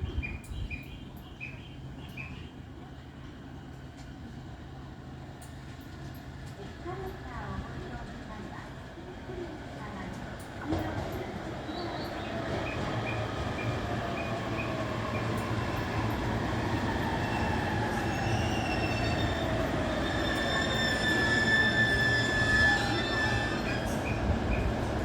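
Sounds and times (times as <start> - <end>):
brake and wheel squeal: 17.3 - 24.7.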